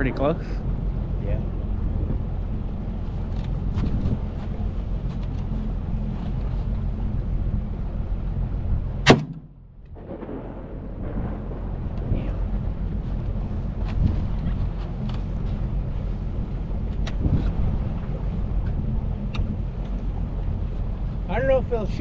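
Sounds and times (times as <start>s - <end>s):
boat engine running: 0.0s - 22.0s
rifle shot: 9.0s - 11.6s.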